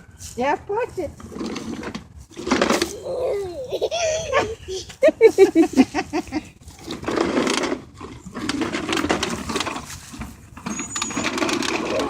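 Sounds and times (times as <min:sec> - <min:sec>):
toy lawn mower rattling: 0:01.2 - 0:03.2, 0:06.6 - 0:12.0.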